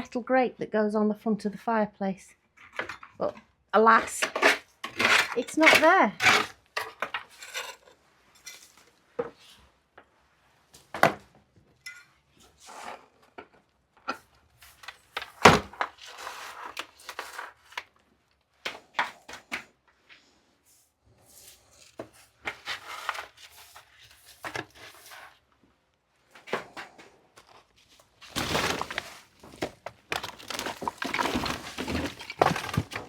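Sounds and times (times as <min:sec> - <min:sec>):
wood and metal objects clattering: 0:02.6 - 0:09.4, 0:26.4 - 0:33.0
scraping and rustling: 0:14.6 - 0:18.0, 0:21.2 - 0:25.6, 0:26.3 - 0:33.0.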